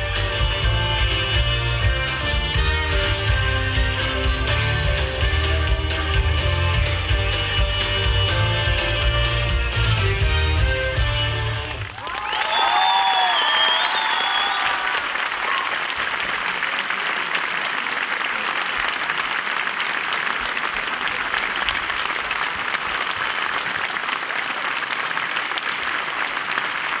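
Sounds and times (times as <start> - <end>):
song ending: 0.0 - 11.9
audience applauding: 11.4 - 27.0.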